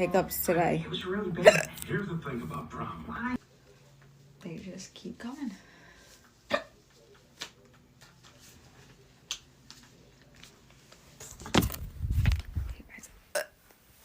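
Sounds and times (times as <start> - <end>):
low knocks and rubbing on microphone: 11.5 - 12.8.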